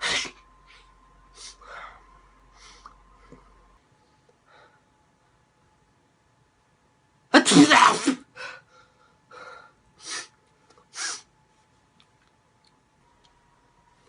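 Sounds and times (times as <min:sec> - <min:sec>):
person sneezing: 0:00.0 - 0:00.4, 0:07.4 - 0:08.3, 0:10.0 - 0:11.3.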